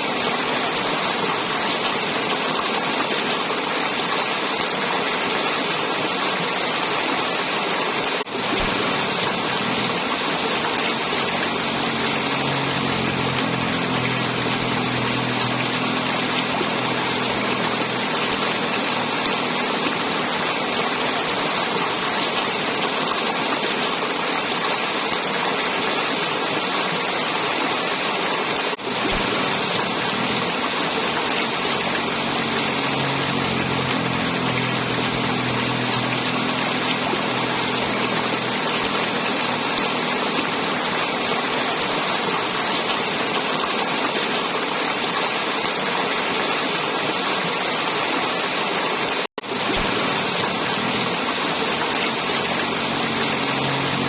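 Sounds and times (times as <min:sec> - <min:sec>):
river water flowing and gurgling: 0:00.0 - 0:54.0
low hum: 0:08.3 - 0:22.8, 0:28.8 - 0:43.1, 0:49.4 - 0:54.0.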